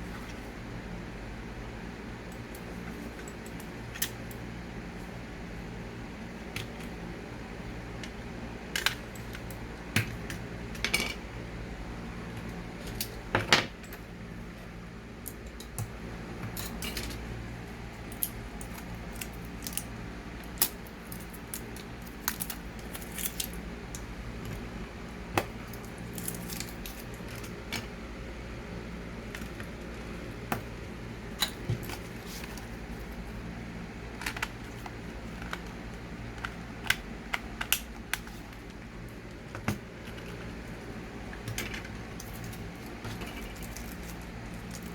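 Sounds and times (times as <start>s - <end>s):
steady low hum: 0.0s - 44.9s
plastic parts clicking and clattering: 34.2s - 38.8s.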